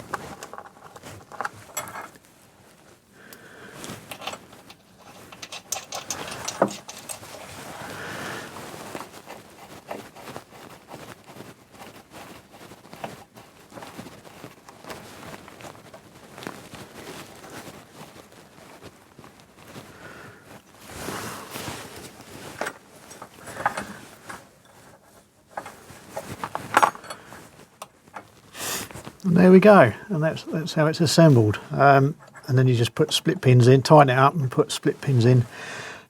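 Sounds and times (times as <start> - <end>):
metal parts and tools clinking: 0.2 - 2.2, 3.9 - 7.9, 22.4 - 27.4.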